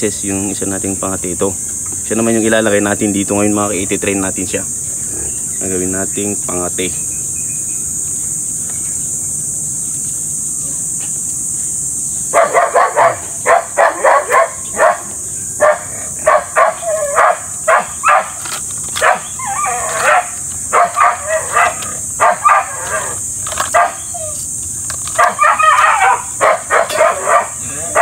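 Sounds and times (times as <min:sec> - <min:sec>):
dog barking: 0:12.3 - 0:18.4, 0:19.0 - 0:24.4, 0:25.1 - 0:28.0.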